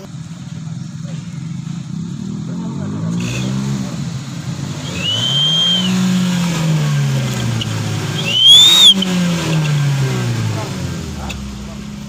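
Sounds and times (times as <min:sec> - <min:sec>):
car engine revving: 0:00.0 - 0:12.0
rising exhaust whistle: 0:04.7 - 0:06.8, 0:07.6 - 0:09.3.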